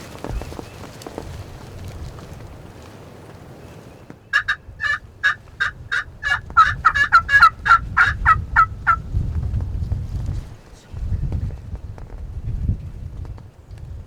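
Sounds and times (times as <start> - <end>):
low wind rumble: 0.0 - 14.0
turkey yelping: 4.3 - 9.0.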